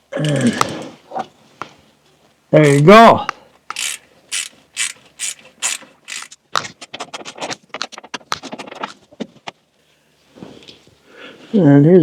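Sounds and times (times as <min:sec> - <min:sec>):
ratcheting screwdriver clicking: 0:02.6 - 0:02.9, 0:03.7 - 0:06.4
screw scraping metal: 0:02.6 - 0:02.9, 0:03.7 - 0:06.4.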